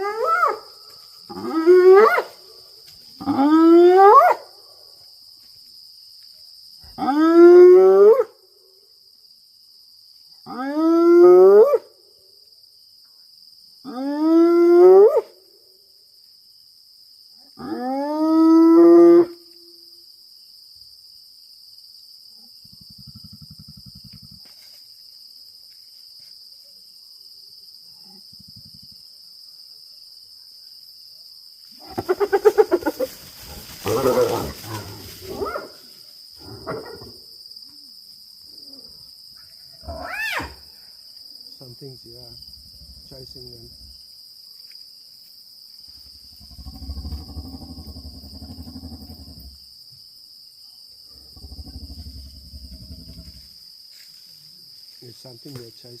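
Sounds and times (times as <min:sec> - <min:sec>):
high insect trill: 0:00.0 - 0:56.0
hyena whooping: 0:31.8 - 0:35.8.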